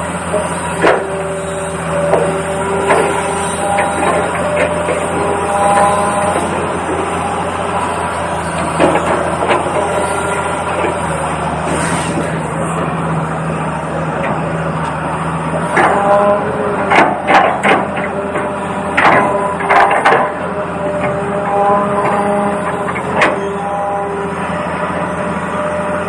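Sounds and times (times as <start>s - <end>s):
plastic clacks and knocks: 19.0s - 20.3s.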